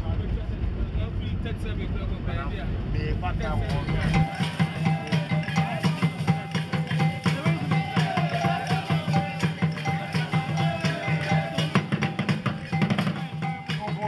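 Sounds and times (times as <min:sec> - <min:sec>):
traditional percussive music: 0:03.4 - 0:14.0.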